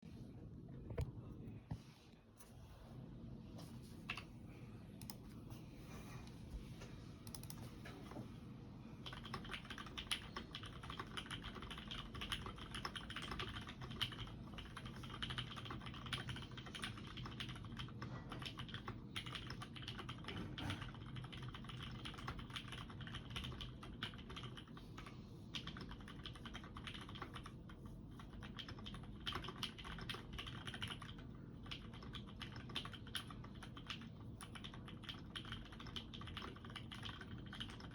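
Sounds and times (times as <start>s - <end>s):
mechanical keyboard typing: 7.2s - 7.7s, 9.0s - 37.9s.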